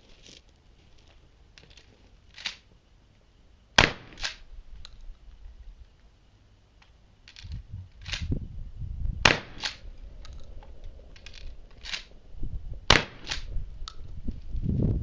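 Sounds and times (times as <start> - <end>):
shotgun shots: 3.8 - 4.4, 9.2 - 9.8, 12.9 - 13.5.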